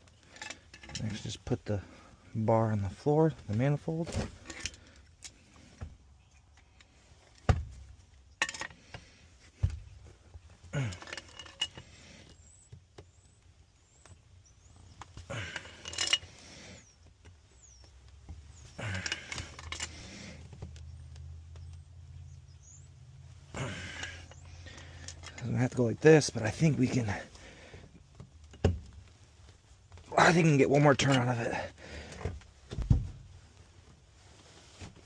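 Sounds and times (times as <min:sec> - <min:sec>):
metal wrenches clinking on fittings: 0:08.4 - 0:08.8, 0:10.8 - 0:11.9, 0:15.5 - 0:16.3, 0:18.8 - 0:20.0, 0:23.7 - 0:25.6.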